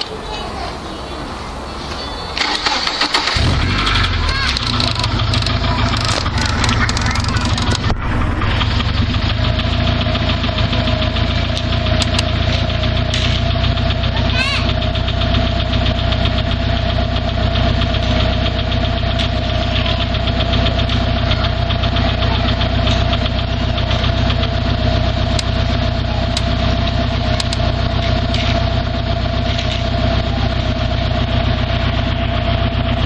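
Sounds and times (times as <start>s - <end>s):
car engine idling with knock: 2.3s - 33.0s.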